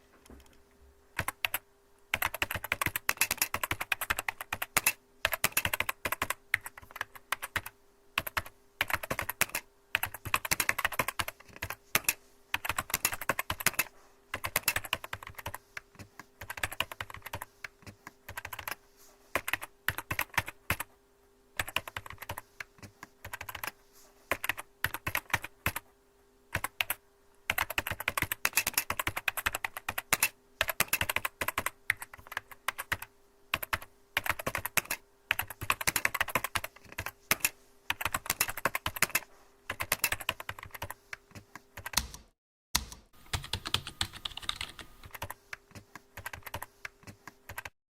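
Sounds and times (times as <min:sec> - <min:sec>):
faint steady hum: 0:00.0 - 0:47.7
keyboard key clicks: 0:41.8 - 0:45.4.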